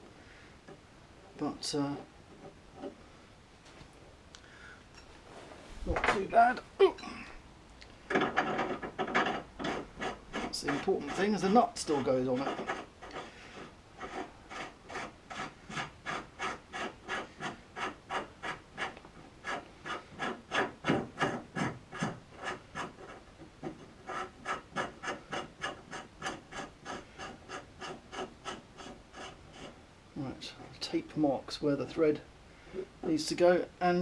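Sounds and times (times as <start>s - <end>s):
hand file rasping on steel: 8.1s - 29.8s.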